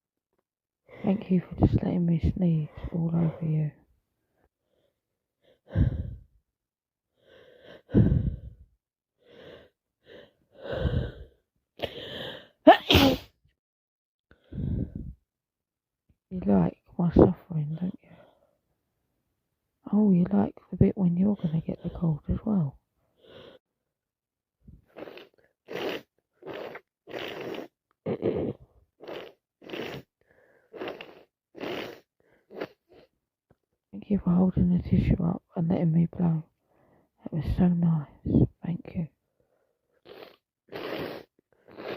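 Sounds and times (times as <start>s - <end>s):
woman gasping breaths: 5.6s - 6.3s, 7.2s - 12.6s, 14.4s - 15.2s
person blowing nose: 12.7s - 13.3s, 24.9s - 30.1s, 30.7s - 33.1s, 40.0s - 41.9s.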